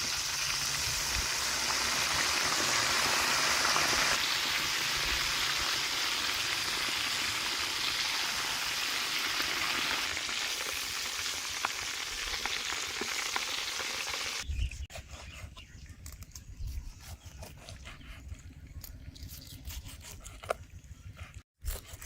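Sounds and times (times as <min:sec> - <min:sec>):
deep-frying sizzle with pops: 0:00.0 - 0:14.5.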